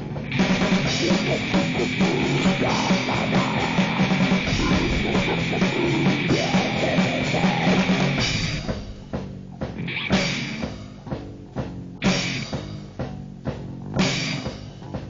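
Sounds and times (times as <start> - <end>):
distorted guitar bass and drums: 0.0 - 15.0
scattered drum hits: 0.3 - 10.7.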